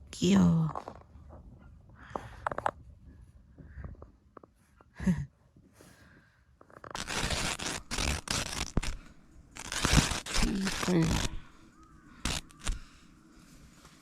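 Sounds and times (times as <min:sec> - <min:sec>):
rustling and scraping: 0:05.6 - 0:14.0
small clicks: 0:06.7 - 0:11.6, 0:12.2 - 0:12.9.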